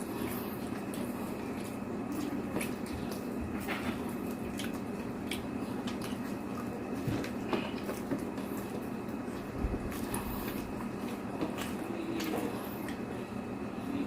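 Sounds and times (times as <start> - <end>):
person chewing food: 0.0 - 13.3
steady low hum: 0.0 - 14.0.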